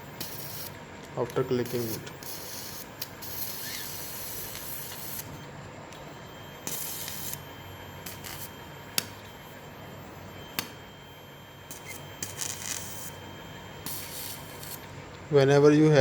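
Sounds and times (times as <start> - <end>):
cautery pencil hissing and sizzling: 1.7 - 5.2
sharp snap: 9.0 - 9.2, 10.6 - 10.8.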